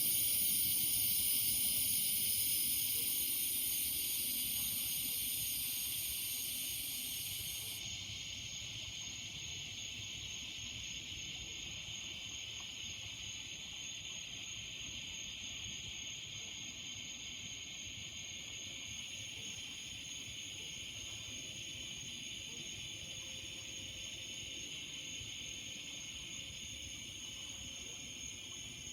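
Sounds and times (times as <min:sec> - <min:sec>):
cicadas buzzing: 0:00.0 - 0:08.6.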